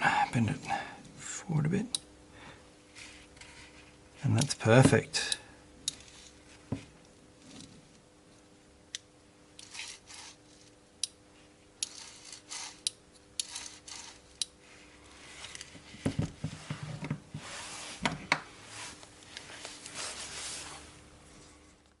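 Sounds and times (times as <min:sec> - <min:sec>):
handling and rubbing noise: 0:02.8 - 0:05.1, 0:09.6 - 0:10.8, 0:11.4 - 0:12.8, 0:13.4 - 0:21.7.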